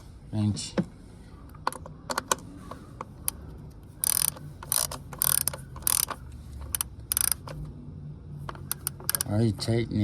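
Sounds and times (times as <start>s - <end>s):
ratchet wrench clicking: 4.0s - 7.6s, 8.5s - 9.4s.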